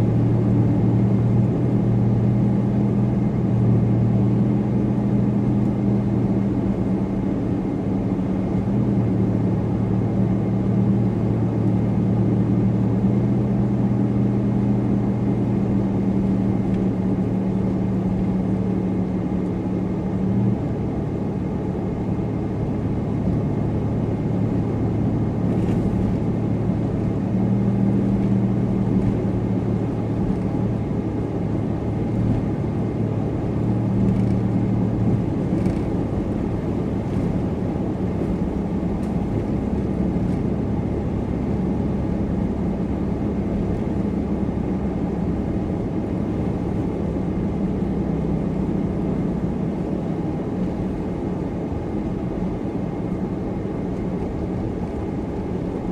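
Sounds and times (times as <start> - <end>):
car engine drone: 0.0 - 55.9
road noise: 0.0 - 55.9.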